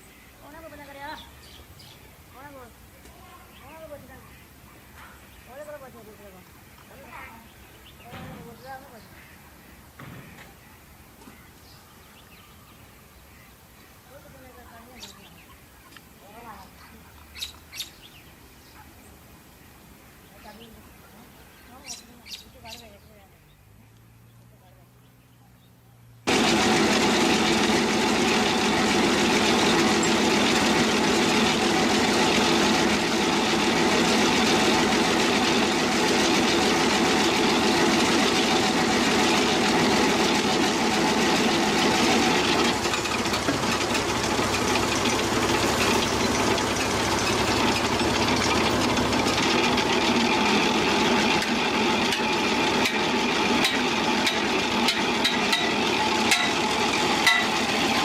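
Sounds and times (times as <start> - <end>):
engine running steadily: 25.7 - 58.0.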